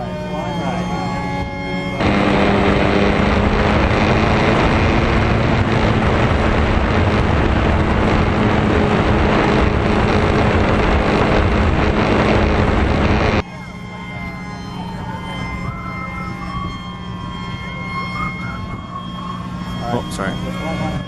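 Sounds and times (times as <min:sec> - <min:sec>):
wind rush on microphone: 0:02.0 - 0:13.4.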